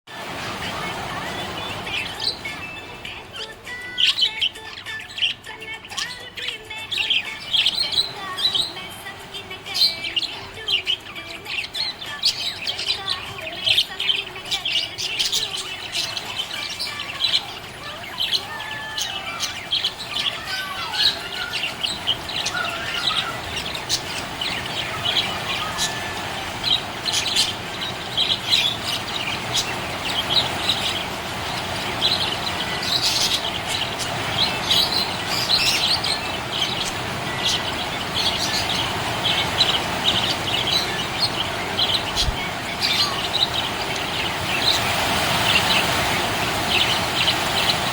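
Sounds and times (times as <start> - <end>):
budgerigar warbling chatter: 0.3 - 47.9
budgerigar chirping: 9.8 - 44.9.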